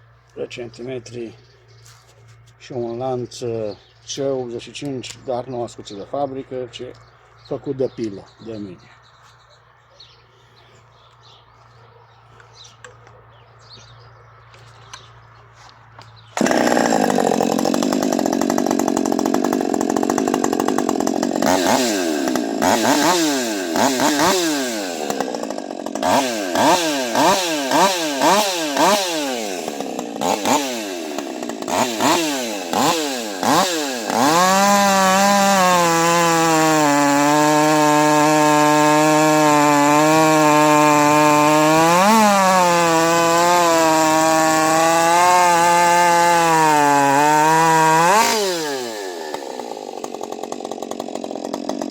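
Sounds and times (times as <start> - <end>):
chainsaw revving: 16.0 - 51.9.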